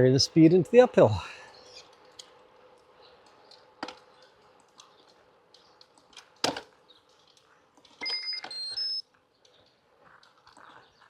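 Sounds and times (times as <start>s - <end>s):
high electronic beeps: 8.0s - 9.0s.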